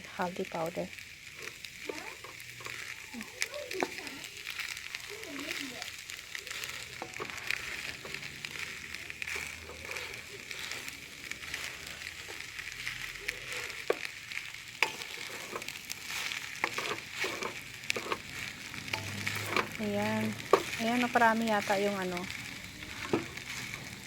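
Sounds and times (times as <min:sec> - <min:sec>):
rice sizzling in a pan: 0:00.0 - 0:24.0
utensil clicking while stirring: 0:01.3 - 0:24.0.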